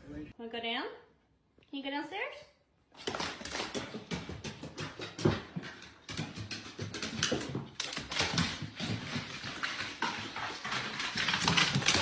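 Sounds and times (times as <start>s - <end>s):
dog claws clicking on hard floor: 2.9s - 12.0s.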